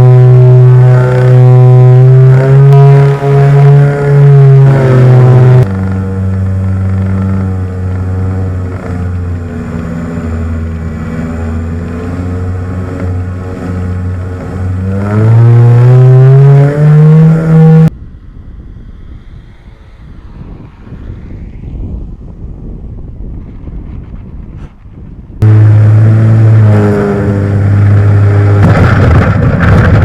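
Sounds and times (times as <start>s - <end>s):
model plane propeller motors droning: 0.0s - 17.9s, 25.4s - 28.6s.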